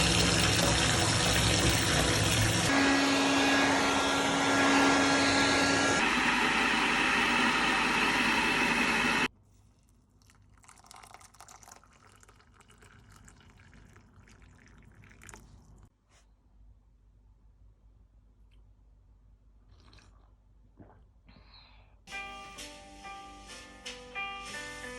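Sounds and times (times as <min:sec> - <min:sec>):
loud rushing noise: 0:02.7 - 0:07.1.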